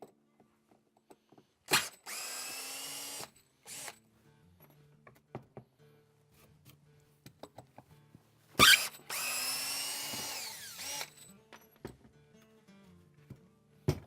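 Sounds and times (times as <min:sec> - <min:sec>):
power drill motor whine: 0:01.7 - 0:04.0, 0:08.6 - 0:11.2.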